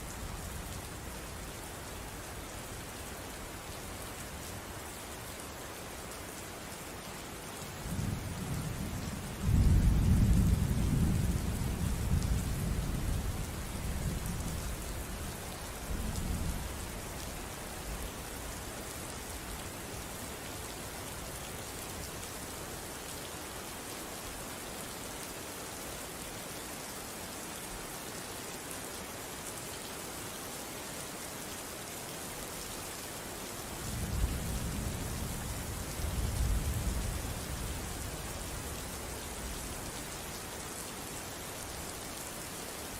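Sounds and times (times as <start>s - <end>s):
steady rain falling: 0.0s - 42.9s
low rumble of thunder: 7.9s - 15.2s, 33.8s - 38.4s.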